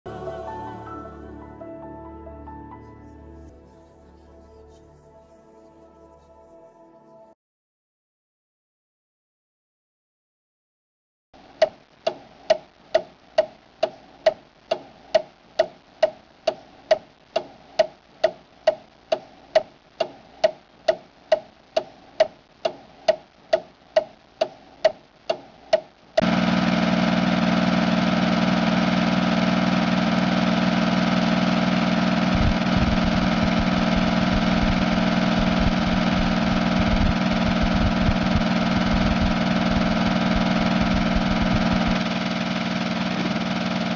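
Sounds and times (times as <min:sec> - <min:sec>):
clock ticking: 0:11.4 - 0:26.3
diesel engine hum: 0:26.2 - 0:43.9.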